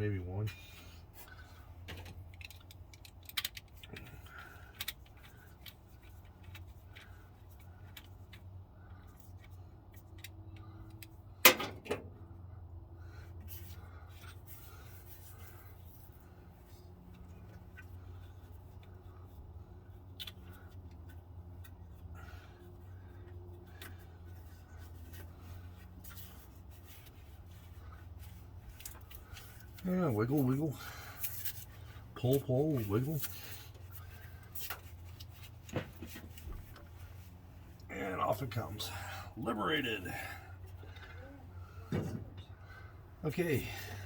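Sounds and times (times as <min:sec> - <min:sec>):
low outdoor hum: 0:00.0 - 0:44.0
hand tools clicking and clinking: 0:01.9 - 0:07.1.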